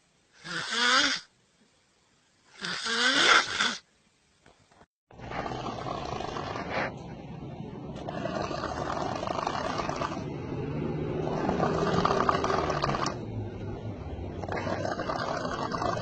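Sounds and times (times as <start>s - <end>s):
person snoring: 0.4s - 1.3s, 2.6s - 3.8s, 5.2s - 7.0s, 8.0s - 10.3s, 11.0s - 13.2s, 14.4s - 16.0s.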